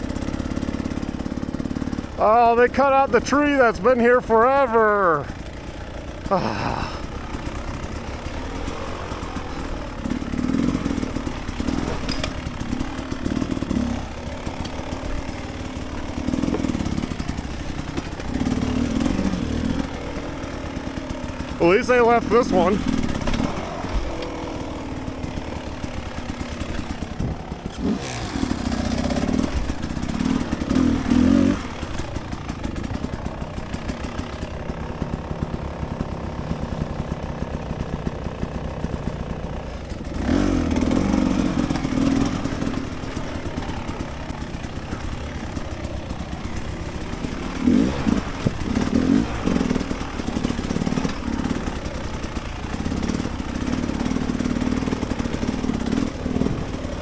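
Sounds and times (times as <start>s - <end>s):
dirt bike engine revving: 0.0s - 57.0s.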